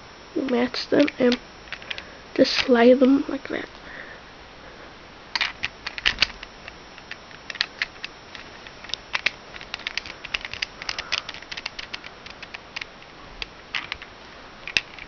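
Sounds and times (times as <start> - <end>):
plastic puzzle cube clicking: 1.0 - 2.0, 5.4 - 15.0.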